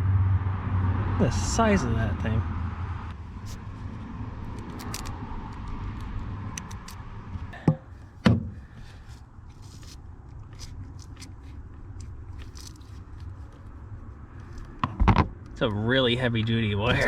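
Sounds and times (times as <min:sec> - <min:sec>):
low steady rumble: 0:00.0 - 0:17.0
small clicks of handling parts: 0:04.6 - 0:07.5, 0:09.1 - 0:13.7.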